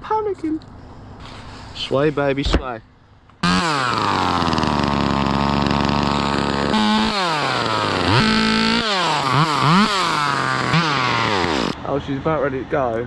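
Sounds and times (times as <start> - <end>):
chainsaw starting and revving: 3.4 - 11.8.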